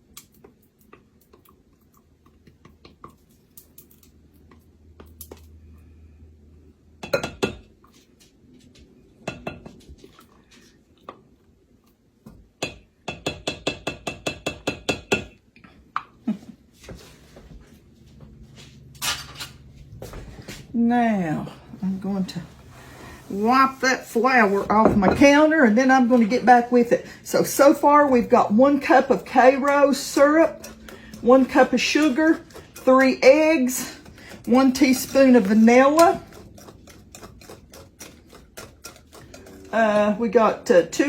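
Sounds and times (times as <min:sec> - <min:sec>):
whisk clinking against bowl: 0:34.4 - 0:39.7.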